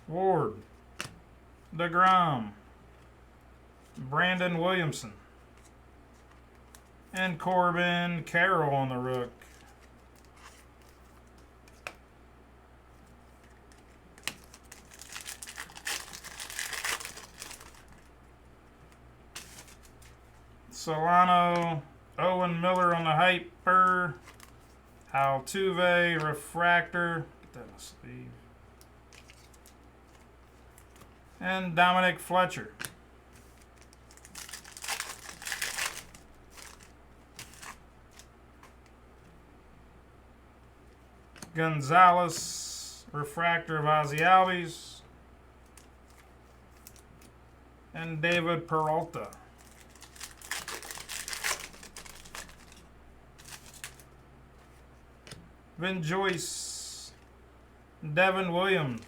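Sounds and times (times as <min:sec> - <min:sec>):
foil wrapper crinkling: 0:13.7 - 0:18.1, 0:33.4 - 0:38.3, 0:49.2 - 0:54.1.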